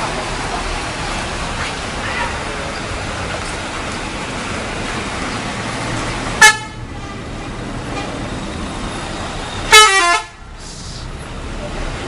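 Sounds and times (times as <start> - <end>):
street noise: 0.0 - 12.0
bus horn tooting: 6.4 - 8.3, 9.7 - 10.5.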